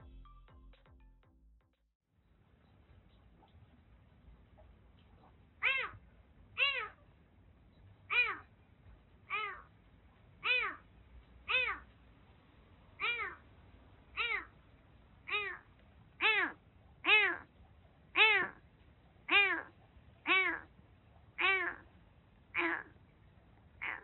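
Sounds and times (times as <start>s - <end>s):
kitten meowing: 5.6s - 6.0s, 6.6s - 7.0s, 8.1s - 8.5s, 10.4s - 10.8s, 11.5s - 11.8s, 13.0s - 13.4s, 14.2s - 14.5s, 20.3s - 20.7s, 21.4s - 21.8s.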